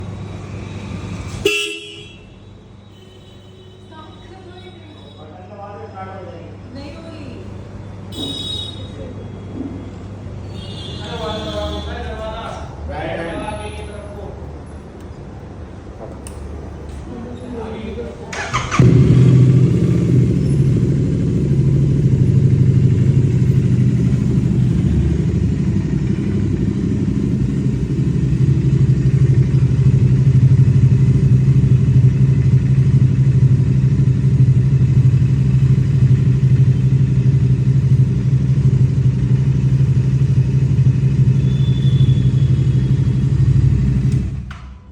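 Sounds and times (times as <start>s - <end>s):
motorcycle engine running: 18.3s - 44.5s.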